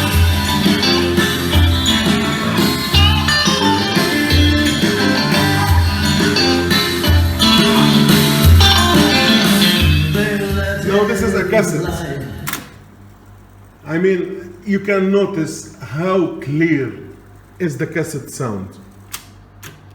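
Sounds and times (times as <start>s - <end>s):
guitar and bass music: 0.0s - 12.5s.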